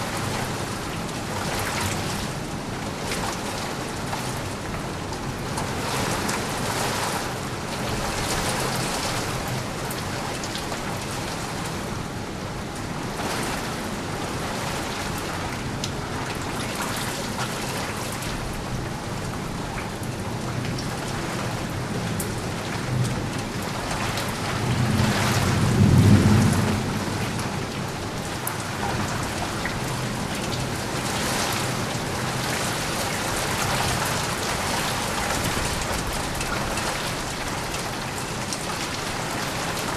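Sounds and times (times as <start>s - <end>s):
heavy rain falling: 0.0s - 39.9s
thunder rumbling: 24.6s - 28.0s.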